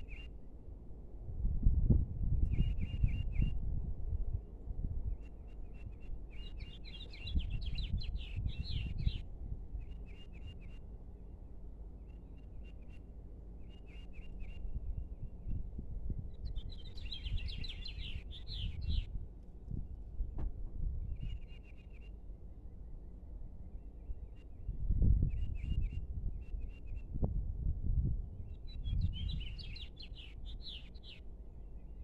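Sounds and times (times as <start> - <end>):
small birds chirping: 6.3 - 9.2, 16.3 - 19.1, 28.6 - 31.3.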